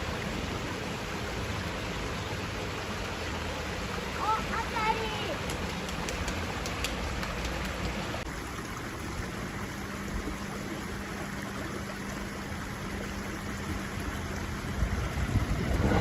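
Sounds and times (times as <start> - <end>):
low steady hum: 7.0 - 16.0
steady rushing noise: 13.7 - 16.0
approaching train: 14.6 - 16.0.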